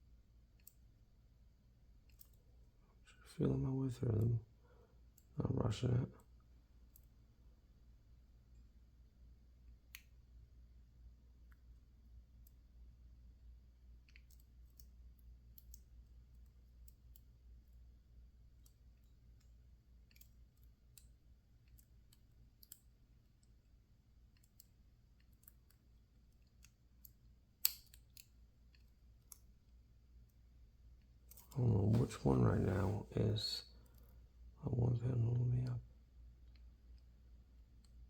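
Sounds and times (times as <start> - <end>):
lock pick clicking in padlock: 27.6 - 28.3.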